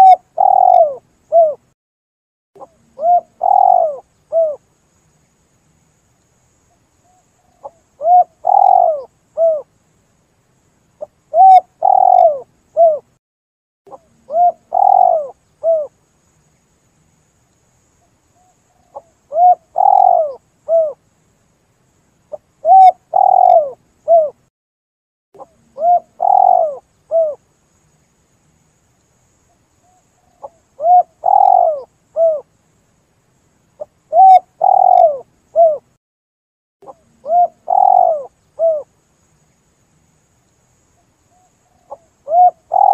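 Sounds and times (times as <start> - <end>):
dove cooing: 0.0 - 1.6, 2.6 - 4.6, 7.6 - 9.7, 11.3 - 13.1, 13.9 - 15.9, 18.9 - 21.0, 22.3 - 24.4, 25.4 - 27.4, 30.4 - 32.5, 33.8 - 35.9, 36.8 - 38.9, 41.8 - 42.9.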